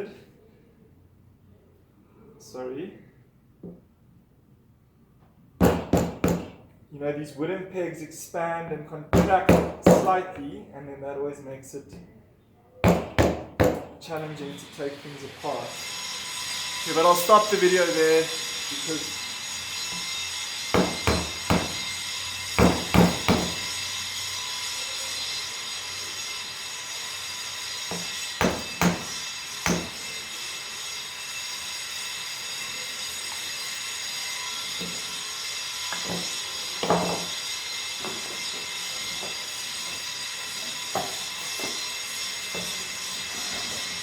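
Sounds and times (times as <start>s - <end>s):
objects knocking and clunking: 36.0s - 37.3s.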